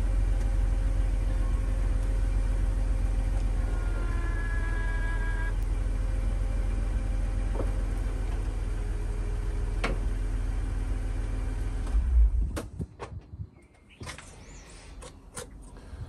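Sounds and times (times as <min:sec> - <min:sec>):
car engine running: 0:00.0 - 0:12.6.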